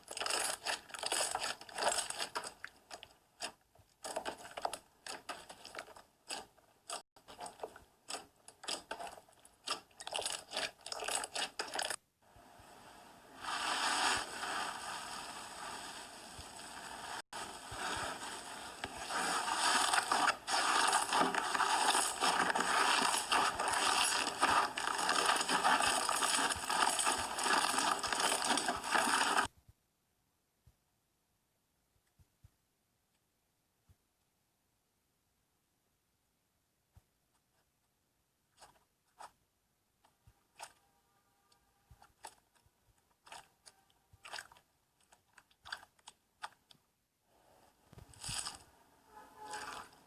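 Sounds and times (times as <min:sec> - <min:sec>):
slime popping and crackling: 0:00.0 - 0:12.0, 0:17.4 - 0:29.5.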